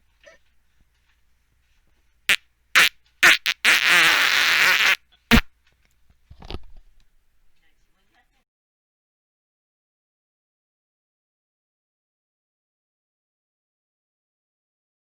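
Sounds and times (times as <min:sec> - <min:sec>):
person farting: 0:02.8 - 0:05.5.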